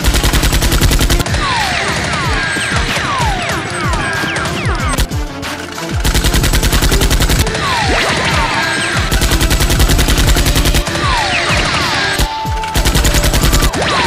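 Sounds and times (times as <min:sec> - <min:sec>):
rapid automatic gunfire: 0:00.0 - 0:14.0
falling whistle-like tones: 0:07.5 - 0:14.0.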